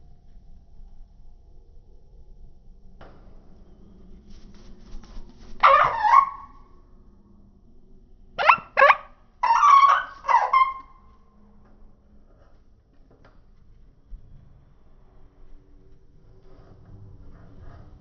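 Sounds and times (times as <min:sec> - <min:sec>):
short pitched animal calls: 0:05.6 - 0:06.6, 0:08.4 - 0:11.0.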